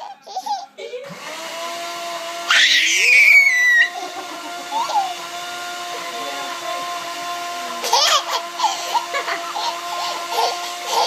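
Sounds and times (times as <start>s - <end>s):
blender motor running: 1.0s - 11.0s
child squealing: 2.5s - 4.0s.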